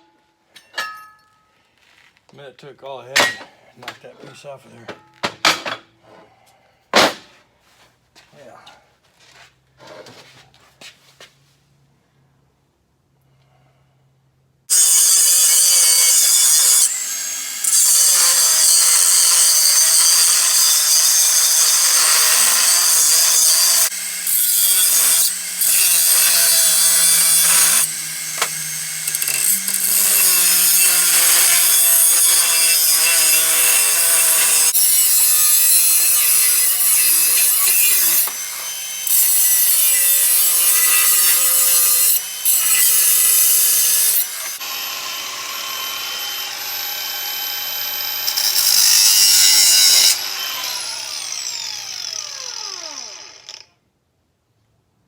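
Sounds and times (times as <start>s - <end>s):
power tool grinding metal: 14.7s - 53.7s.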